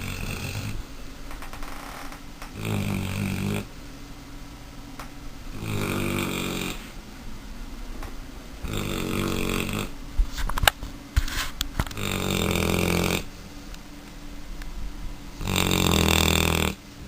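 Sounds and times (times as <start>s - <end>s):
puppy snoring: 0.0s - 0.8s, 2.5s - 3.7s, 5.5s - 7.0s, 8.6s - 10.0s, 11.8s - 13.3s, 15.4s - 16.8s.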